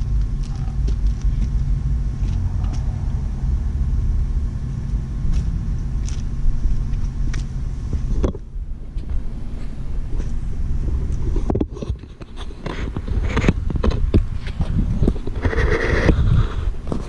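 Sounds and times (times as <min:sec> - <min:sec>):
low rumble: 0:00.0 - 0:12.2.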